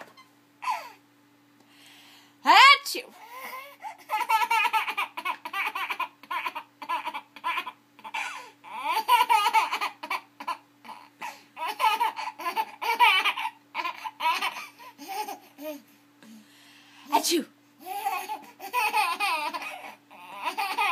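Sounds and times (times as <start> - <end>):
faint steady hum: 0.0 - 20.9
small child laughing: 3.3 - 15.9, 17.8 - 20.9.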